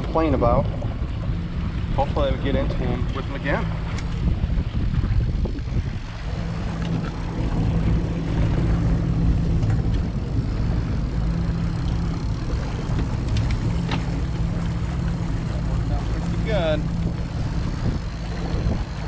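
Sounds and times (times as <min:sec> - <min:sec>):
boat engine droning: 0:00.0 - 0:19.0
wind and water rushing: 0:00.0 - 0:19.0
faint clicks: 0:12.9 - 0:14.8.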